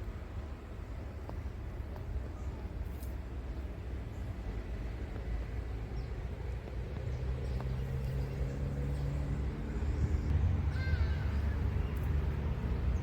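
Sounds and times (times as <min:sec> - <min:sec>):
low outdoor rumble: 0:00.0 - 0:13.0
motor vehicle passing by: 0:06.0 - 0:13.0.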